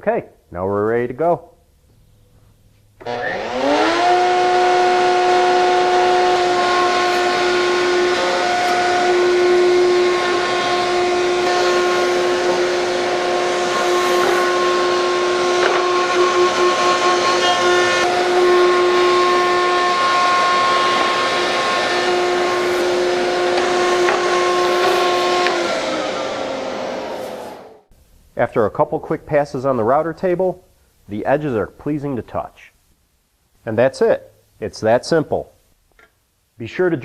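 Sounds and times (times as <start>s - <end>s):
dust extraction running: 3.0s - 27.8s
router high whine: 3.0s - 27.8s.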